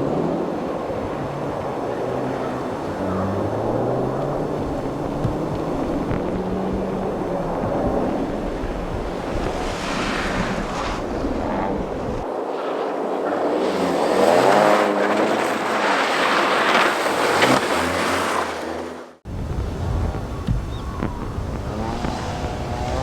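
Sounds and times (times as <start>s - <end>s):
rally car engine revving: 0.0s - 12.2s, 13.3s - 23.0s
wind rumble on microphone: 0.0s - 14.0s, 19.2s - 23.0s.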